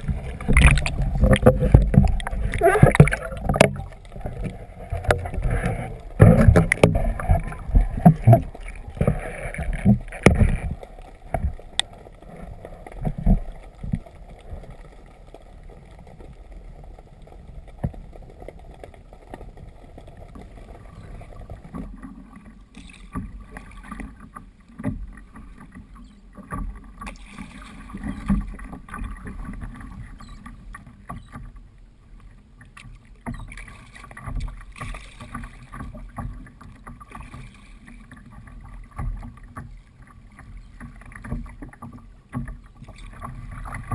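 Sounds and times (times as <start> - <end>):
water knocking against hull: 0.0 - 11.9
low wash of water: 0.0 - 43.9
paddle splashes: 0.0 - 43.9.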